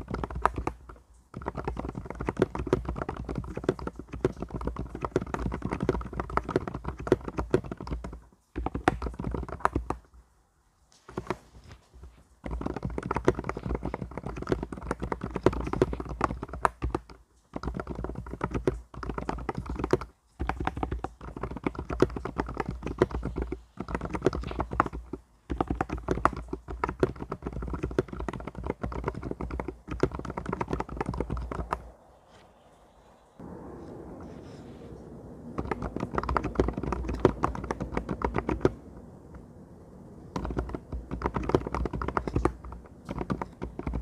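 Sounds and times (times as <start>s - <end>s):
mechanical keyboard typing: 0.0s - 10.1s, 11.1s - 31.9s, 35.5s - 38.8s, 40.3s - 44.0s.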